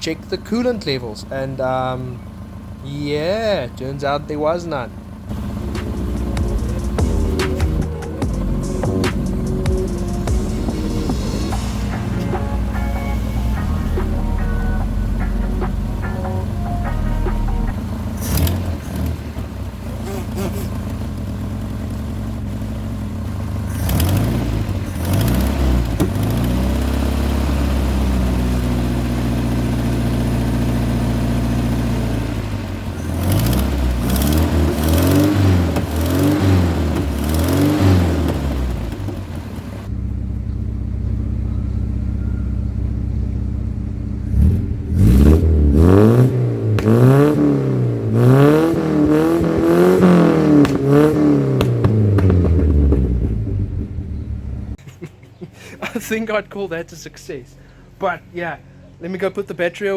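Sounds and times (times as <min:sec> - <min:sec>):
car engine revving: 0:00.0 - 0:54.8.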